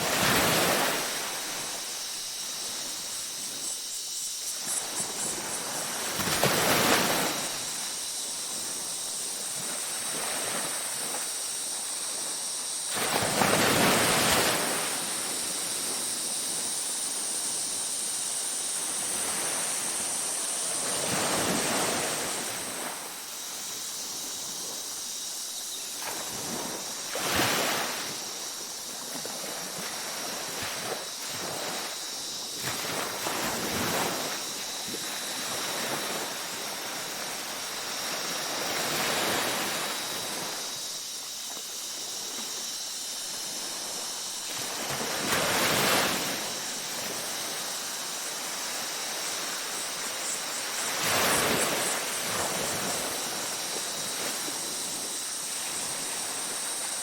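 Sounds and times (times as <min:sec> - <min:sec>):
ocean waves breaking: 0:00.0 - 0:03.6, 0:04.7 - 0:16.7, 0:26.0 - 0:40.9
night insects chorus: 0:00.0 - 0:57.0.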